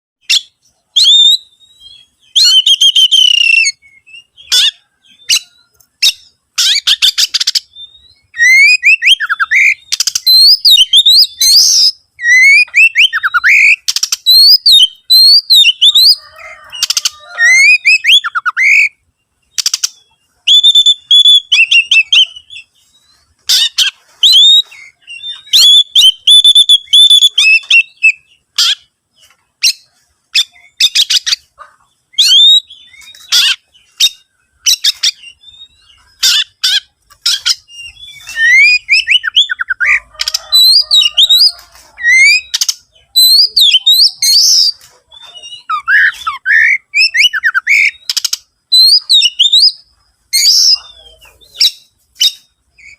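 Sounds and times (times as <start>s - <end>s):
bird singing with trills: 0.2s - 52.9s.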